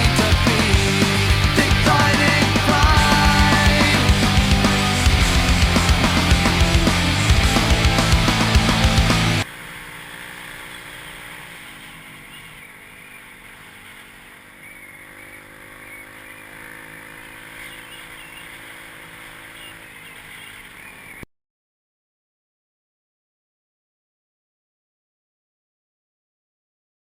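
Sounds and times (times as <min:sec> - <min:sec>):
dirt bike engine running: 0:00.0 - 0:21.3.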